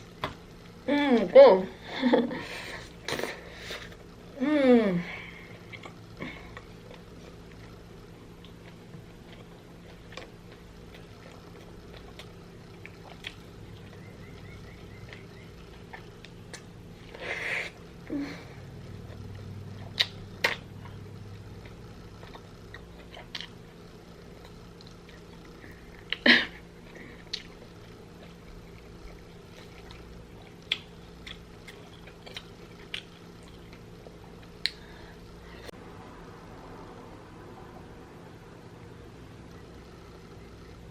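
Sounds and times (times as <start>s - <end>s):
steady low hum: 0.0s - 40.9s
wet chewing: 5.6s - 17.2s, 18.8s - 26.2s, 26.8s - 34.8s.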